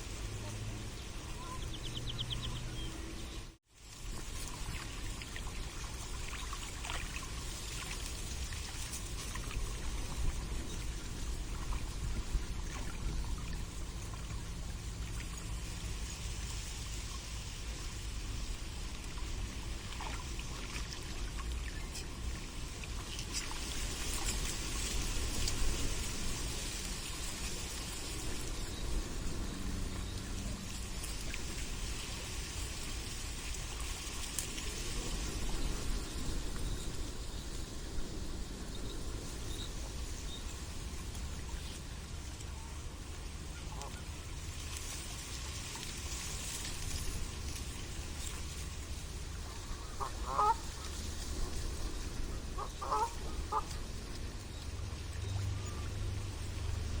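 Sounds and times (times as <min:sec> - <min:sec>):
low steady hum: 0:00.0 - 0:57.0
water trickling and dripping: 0:03.9 - 0:36.8
low rumble: 0:23.8 - 0:57.0.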